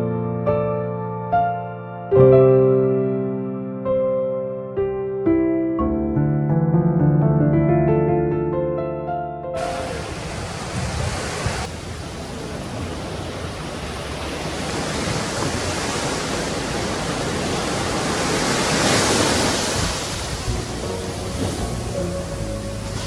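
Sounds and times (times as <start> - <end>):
waves breaking on shore: 9.6 - 23.0.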